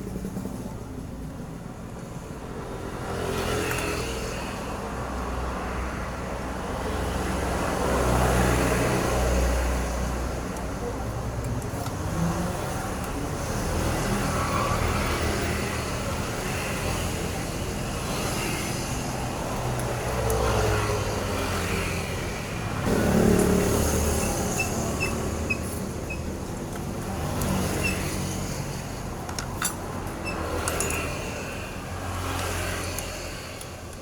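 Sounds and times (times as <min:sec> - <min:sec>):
vehicles passing: 0:00.0 - 0:34.0.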